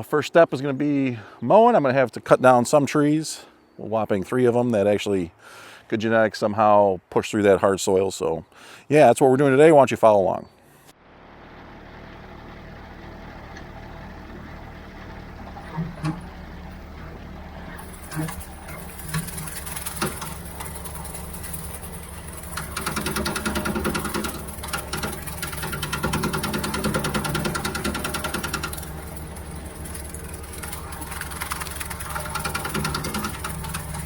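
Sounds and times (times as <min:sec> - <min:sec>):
tractor engine running: 0:11.0 - 0:34.0
fast rattle: 0:12.5 - 0:34.0
sharp knocks: 0:22.4 - 0:29.2.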